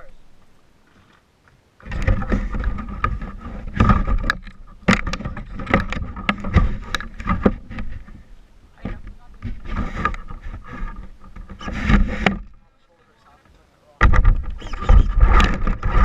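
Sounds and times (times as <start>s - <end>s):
sharp knocks and clatters: 1.8s - 8.2s, 8.8s - 12.6s, 14.0s - 16.0s.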